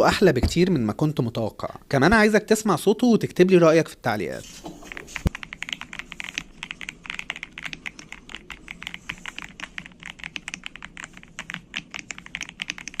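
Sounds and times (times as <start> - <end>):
mechanical keyboard typing: 4.9 - 13.0.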